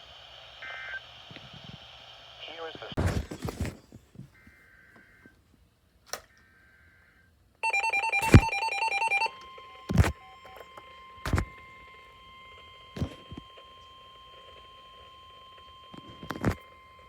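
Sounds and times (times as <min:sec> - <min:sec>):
warbling electronic alert beep: 0:07.6 - 0:09.4
steady warning alarm tone: 0:07.6 - 0:17.0
sharp thumps: 0:11.3 - 0:11.5.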